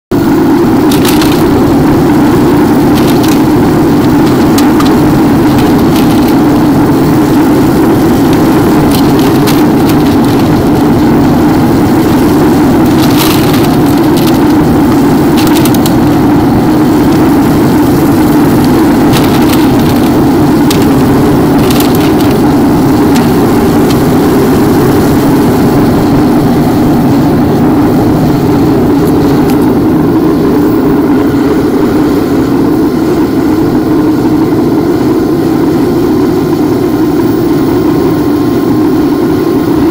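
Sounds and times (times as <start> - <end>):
furnace roaring air and flame: 0.1 - 39.9
sharp crackles and pops: 0.7 - 30.2.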